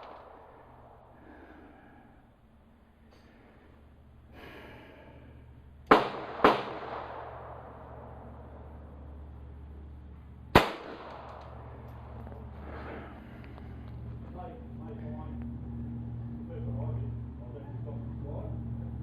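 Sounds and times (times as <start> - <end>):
pistol shots: 0.0 - 1.2, 5.9 - 8.6, 10.5 - 12.2.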